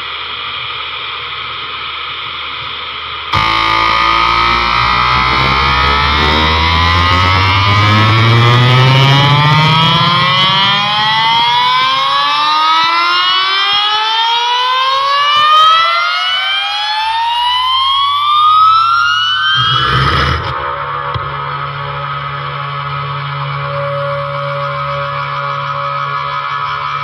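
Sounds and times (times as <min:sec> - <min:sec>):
low bass rumble: 0:03.4 - 0:11.1
electronic rising siren sweep: 0:03.4 - 0:26.9.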